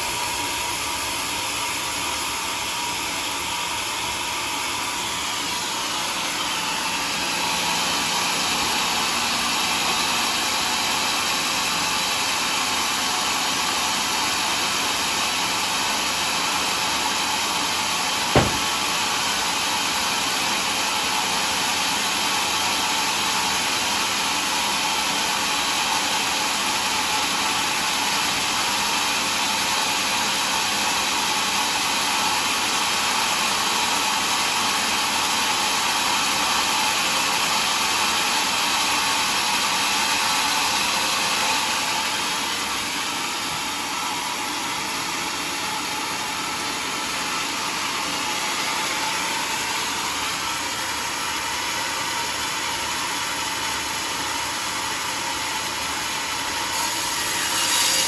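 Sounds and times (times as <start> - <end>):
sawmill cutting log: 0.0 - 58.0
sharp knock: 18.4 - 18.9.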